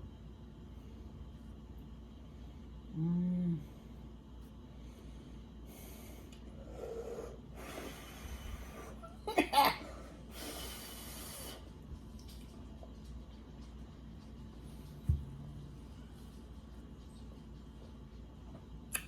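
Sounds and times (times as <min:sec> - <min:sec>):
woman breathing heavily: 0:04.7 - 0:09.2.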